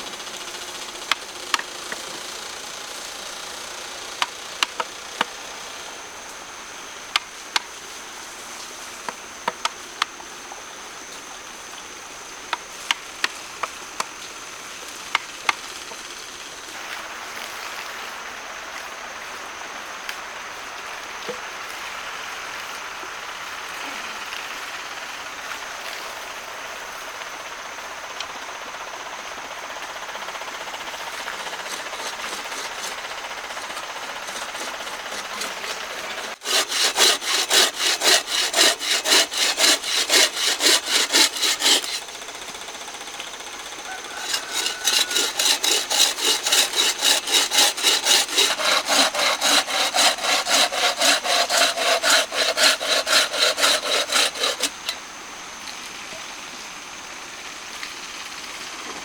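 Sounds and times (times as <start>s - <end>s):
fast even tool strokes: 30.8s - 42.6s, 43.9s - 54.8s
hand tool rasping wood: 30.9s - 42.6s, 43.9s - 54.8s.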